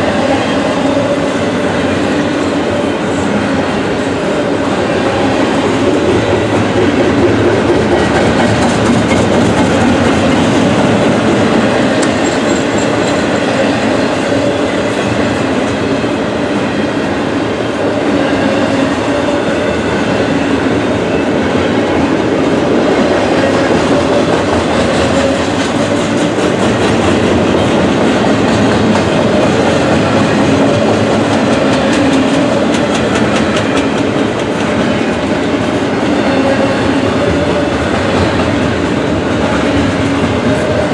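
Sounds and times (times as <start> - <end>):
freight train cars rolling: 0.0 - 40.9
wheels clacking over rail joints: 5.6 - 13.4.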